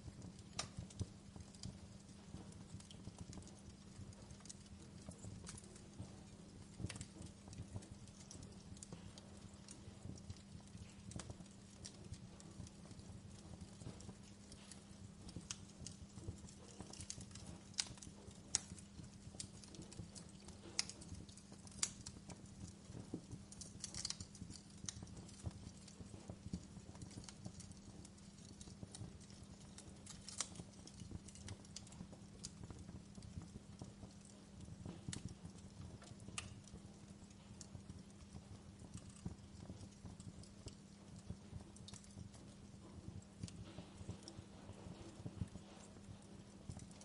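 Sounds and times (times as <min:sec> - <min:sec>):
faint steady low hum: 0:00.0 - 0:47.0
wood fire crackling and popping: 0:00.0 - 0:47.0.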